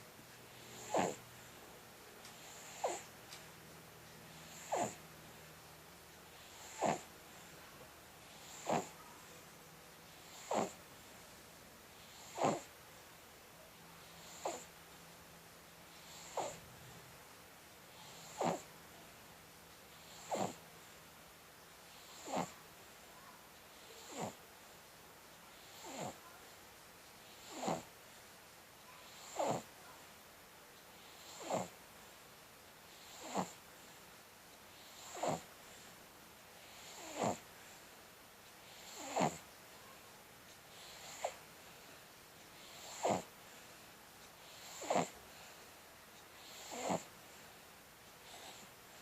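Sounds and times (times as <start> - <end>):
person snoring: 0.6 - 1.2, 4.4 - 5.0, 6.4 - 7.1, 8.4 - 9.0, 10.2 - 10.8, 12.1 - 12.7, 16.1 - 16.6, 18.1 - 18.6, 20.1 - 20.6, 22.1 - 22.6, 33.0 - 33.6, 35.0 - 35.4, 36.7 - 37.4, 38.8 - 39.4, 42.7 - 43.3, 44.5 - 45.1, 46.4 - 47.1.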